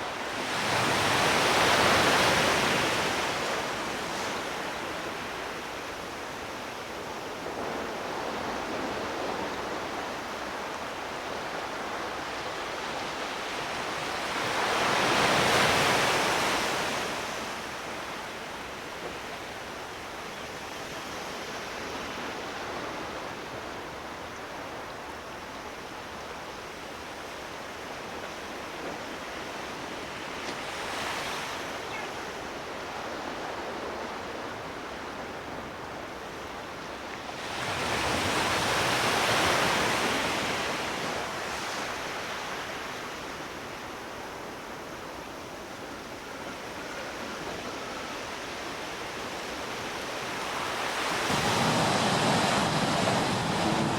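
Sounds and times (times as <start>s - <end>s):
sea waves washing in: 49.0s - 53.9s
wave breaking: 50.4s - 53.9s.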